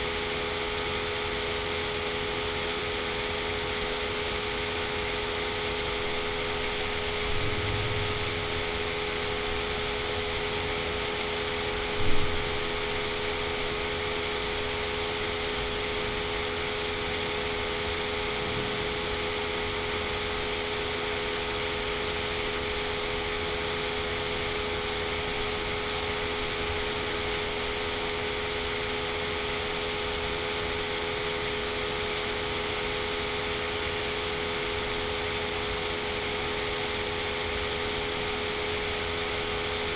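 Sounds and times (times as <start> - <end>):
mechanical hum and hiss: 0.0 - 39.9
mid-pitched drone: 5.1 - 22.0.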